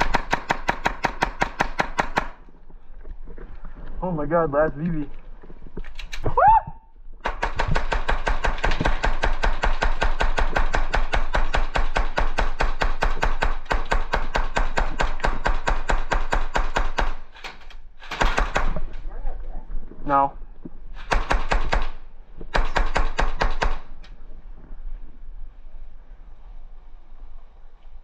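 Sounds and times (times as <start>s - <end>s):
airsoft gun firing full-auto: 0.0s - 2.4s, 7.2s - 17.4s, 18.0s - 18.8s, 21.0s - 23.9s.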